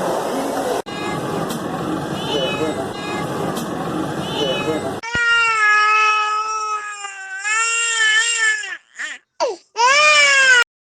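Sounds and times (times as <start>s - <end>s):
infant crying: 5.0s - 10.7s.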